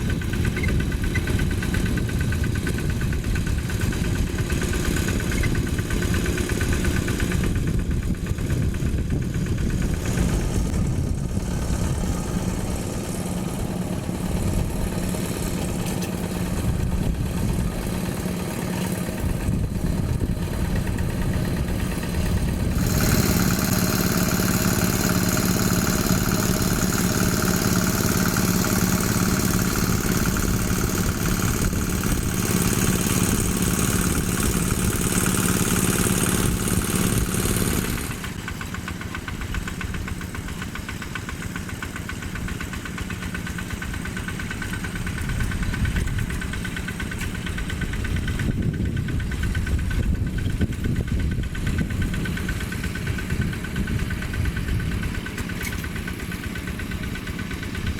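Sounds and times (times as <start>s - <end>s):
diesel tractor engine running: 0.0s - 57.9s.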